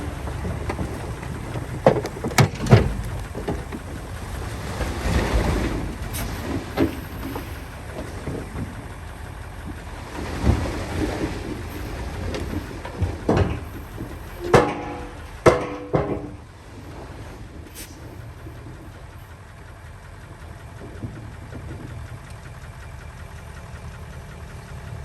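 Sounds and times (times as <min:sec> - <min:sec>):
dirt thudding and scraping: 0:00.0 - 0:08.6
diesel engine rumbling: 0:00.0 - 0:25.0
sharp metallic clanks: 0:14.3 - 0:16.4.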